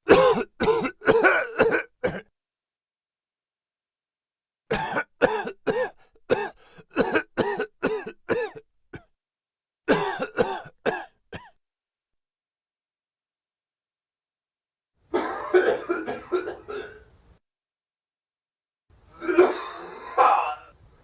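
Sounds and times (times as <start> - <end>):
man coughing: 0.0 - 2.3, 4.7 - 9.1, 9.9 - 11.6, 15.2 - 17.0, 19.2 - 20.8.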